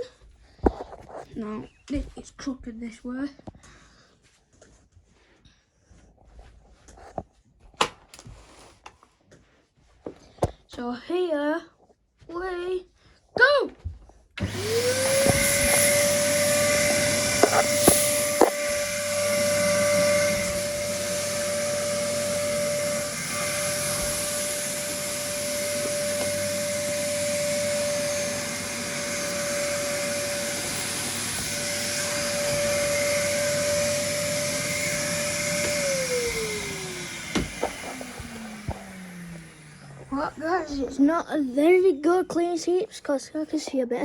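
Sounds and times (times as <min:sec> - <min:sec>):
vacuum cleaner running: 0:14.4 - 0:41.2.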